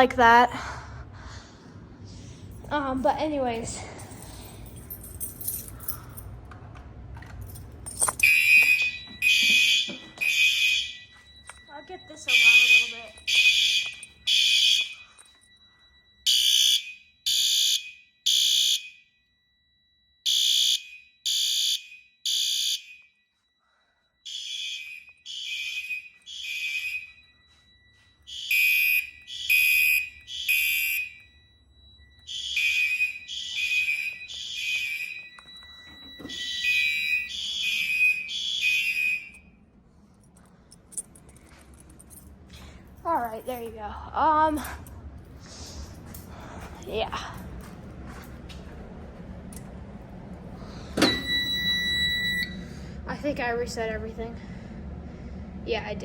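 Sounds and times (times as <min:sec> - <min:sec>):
fire alarm blasts: 0:00.0 - 0:56.0
faint steady high tone: 0:10.8 - 0:16.3.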